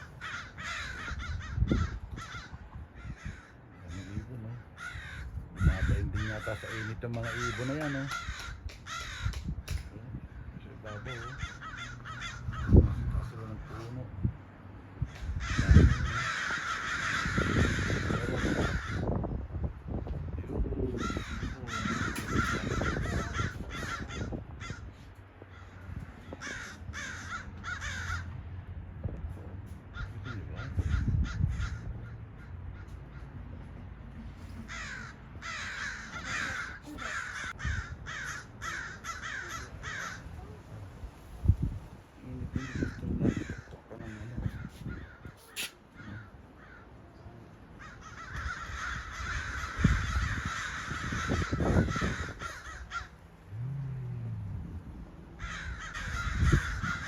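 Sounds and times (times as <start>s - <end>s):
crows cawing: 0.0s - 14.0s, 15.0s - 28.5s, 29.8s - 40.4s, 41.8s - 57.0s
low rumble: 52.2s - 57.0s.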